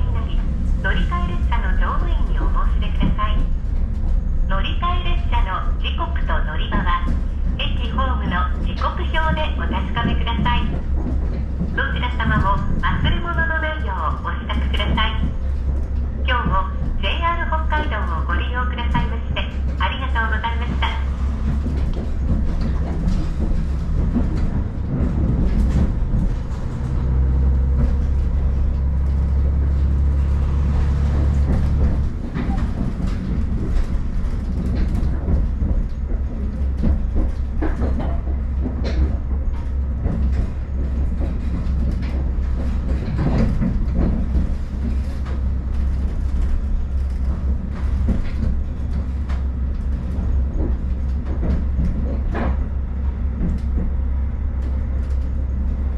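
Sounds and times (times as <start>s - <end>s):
rail-joint clicks and knocks: 0.0s - 55.9s
railcar engine and wheel rumble: 0.0s - 55.9s.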